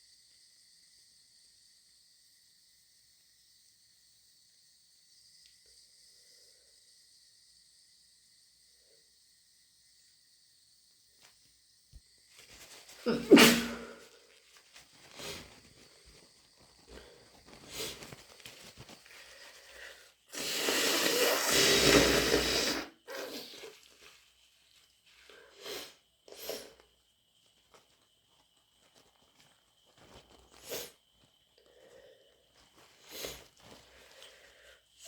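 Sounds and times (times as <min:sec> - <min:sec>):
person sniffling: 0:12.9 - 0:14.2, 0:19.1 - 0:23.8, 0:25.3 - 0:26.8
person blowing nose: 0:13.0 - 0:14.2, 0:15.1 - 0:15.6, 0:16.9 - 0:18.2, 0:19.2 - 0:23.9, 0:25.6 - 0:26.8, 0:30.5 - 0:31.0, 0:32.9 - 0:34.3.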